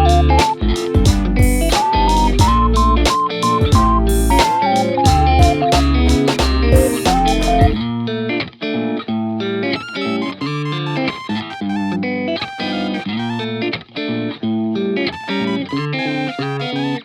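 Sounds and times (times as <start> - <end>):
plucked guitar music: 0.0 - 17.0.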